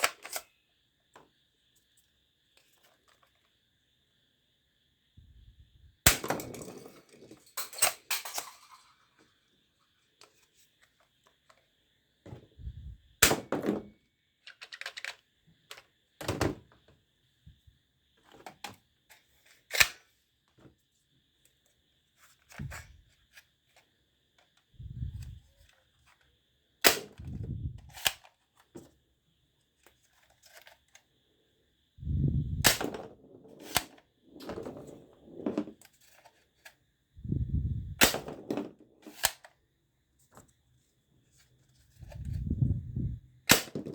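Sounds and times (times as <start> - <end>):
plastic toy gun snaps and clicks: 19.7 - 20.1, 26.9 - 28.3, 39.1 - 39.6, 43.5 - 43.9.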